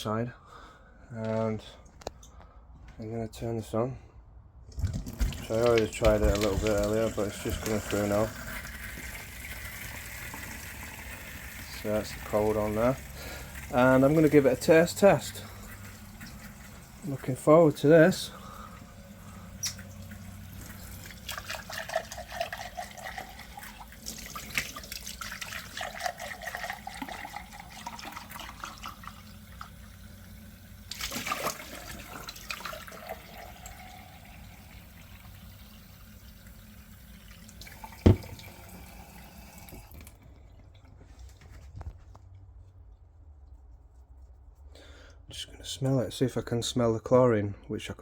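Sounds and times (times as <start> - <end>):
water running from tap: 4.8 - 40.4.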